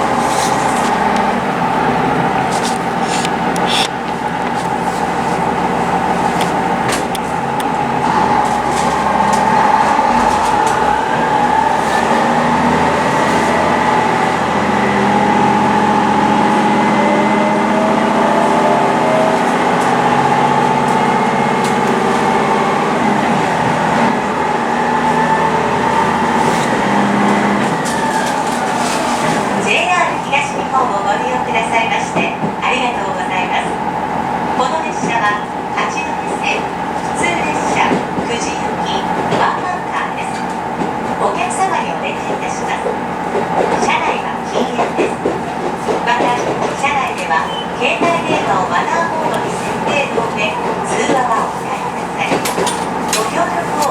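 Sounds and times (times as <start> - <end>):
vehicle running heard from inside: 0.0 - 31.6.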